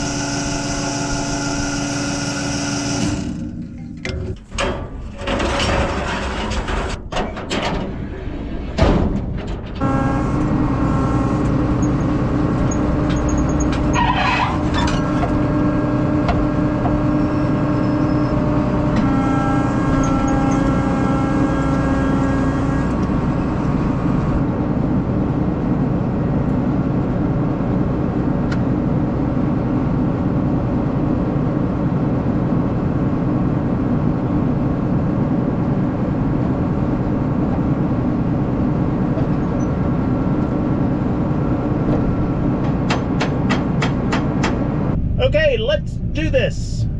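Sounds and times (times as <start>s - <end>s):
vehicle engine running: 9.8s - 46.9s
hissing squeal: 12.7s - 15.1s.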